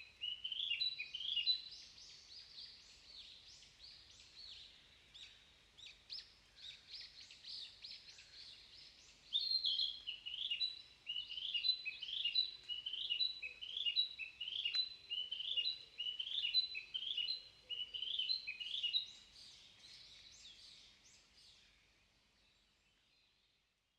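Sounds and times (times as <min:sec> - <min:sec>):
faint calls of other birds: 0:00.0 - 0:23.6
bird singing high repeated phrases: 0:00.1 - 0:03.4, 0:09.3 - 0:21.0.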